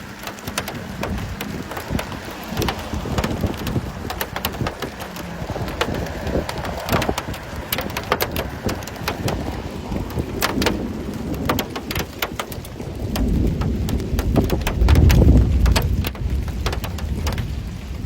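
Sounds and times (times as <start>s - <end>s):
falling hail and rain hiss: 0.0s - 18.0s
hailstones pattering on hard surfaces: 0.0s - 18.0s
low rumble: 0.8s - 11.9s.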